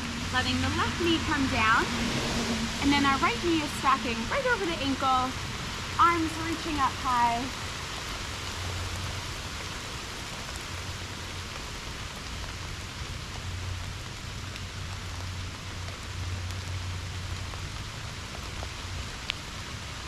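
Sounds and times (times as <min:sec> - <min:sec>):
low hum: 0:00.0 - 0:07.6
steady rain falling: 0:00.0 - 0:20.0.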